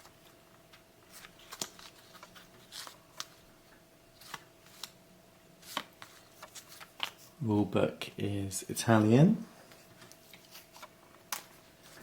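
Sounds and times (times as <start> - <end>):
cards rustling and sliding: 0.0 - 3.5, 4.2 - 5.0, 5.6 - 7.3, 9.7 - 12.0
faint steady hum: 0.0 - 12.0.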